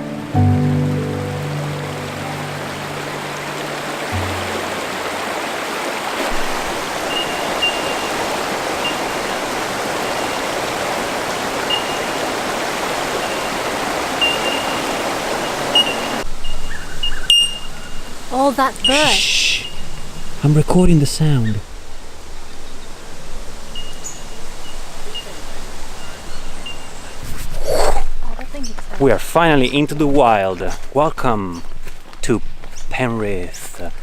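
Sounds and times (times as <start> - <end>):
music track: 0.0 - 5.5
flowing water rushing: 0.0 - 16.4, 17.5 - 28.2.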